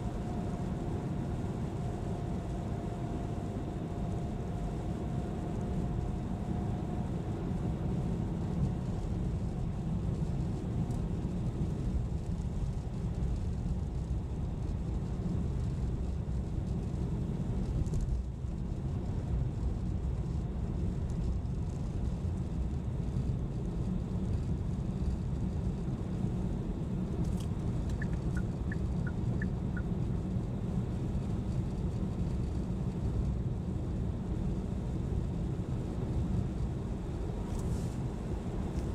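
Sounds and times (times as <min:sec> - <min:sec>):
car tyres and engine rumble: 0:00.0 - 0:38.9
faint high chirps: 0:27.9 - 0:29.9.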